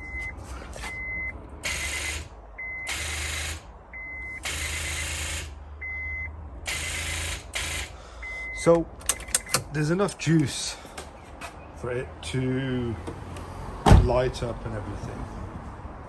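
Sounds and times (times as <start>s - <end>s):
starter solenoid clicking: 9.0s - 9.7s.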